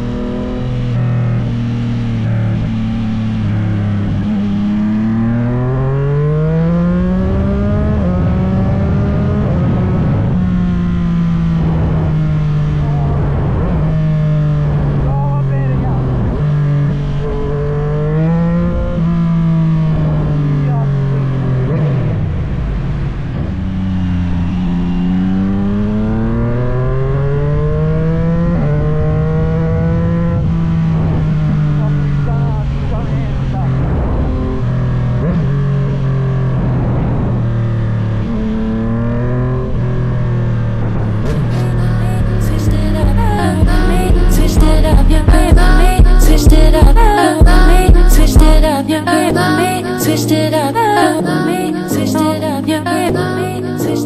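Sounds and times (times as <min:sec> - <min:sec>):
motorcycle engine accelerating: 0:00.0 - 0:49.9.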